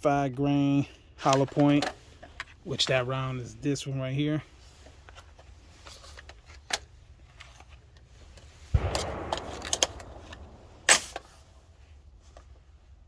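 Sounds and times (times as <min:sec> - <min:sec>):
rifle shots: 0:08.7 - 0:11.6.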